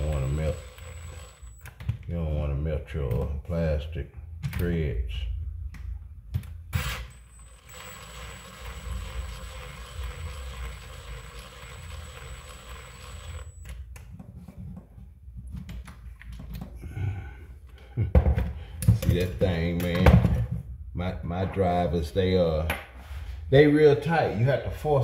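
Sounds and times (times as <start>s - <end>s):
power screwdriver whining: 0.0s - 1.8s, 6.8s - 13.8s.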